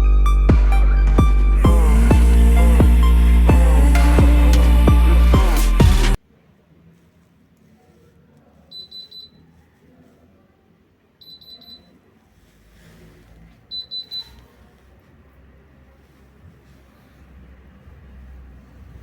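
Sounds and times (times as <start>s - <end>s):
short high alarm beeps: 11.2s - 11.9s.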